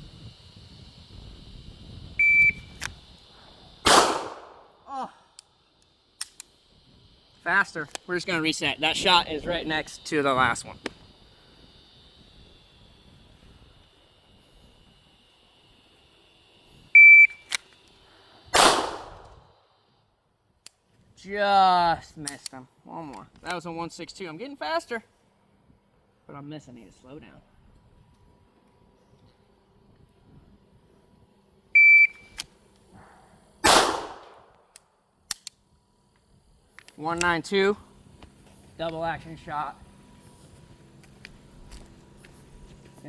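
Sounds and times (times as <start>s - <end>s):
shot timer beep: 2.2s - 2.7s, 17.0s - 17.4s, 31.8s - 32.4s
pistol shot: 3.8s - 4.8s, 18.6s - 19.4s, 33.6s - 34.6s.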